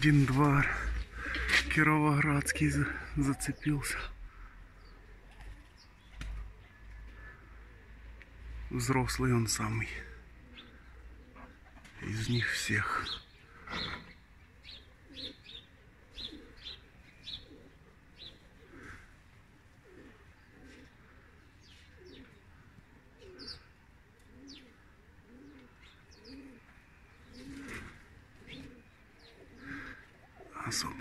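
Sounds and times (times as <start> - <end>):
pigeons cooing: 0.0 - 31.0
small birds chirping: 0.0 - 31.0.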